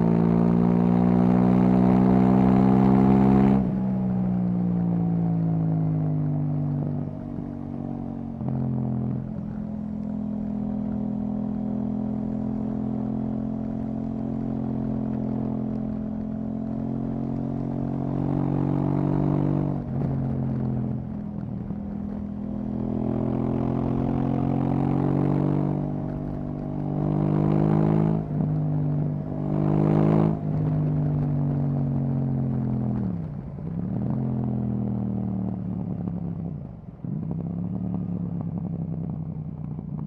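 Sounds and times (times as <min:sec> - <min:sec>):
motorcycle engine revving: 0:06.8 - 0:36.5.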